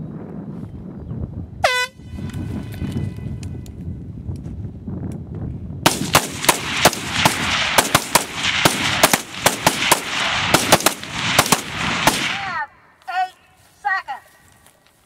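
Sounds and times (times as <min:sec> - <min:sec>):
rifle shots: 0:05.9 - 0:12.6.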